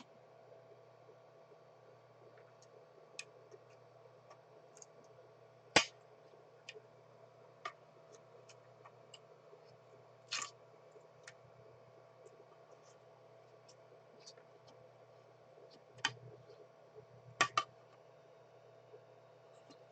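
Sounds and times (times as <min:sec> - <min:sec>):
faint hum: 0:00.0 - 0:19.9
small clicks and ticks: 0:02.2 - 0:05.9.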